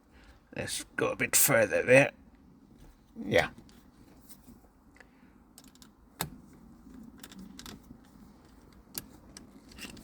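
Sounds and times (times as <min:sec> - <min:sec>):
screwdriver scraping and clicking: 0:08.4 - 0:10.0.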